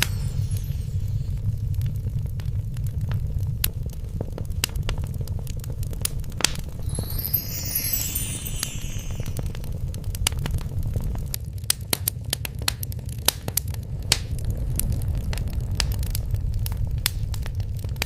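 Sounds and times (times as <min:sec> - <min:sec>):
wood fire crackling: 0:00.1 - 0:06.0.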